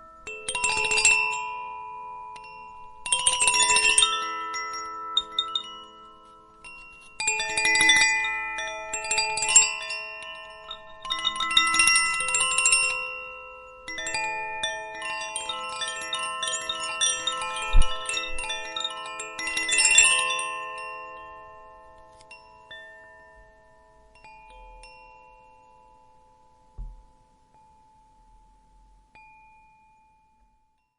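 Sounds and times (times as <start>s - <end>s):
wind chime tinkling: 0.0s - 30.9s.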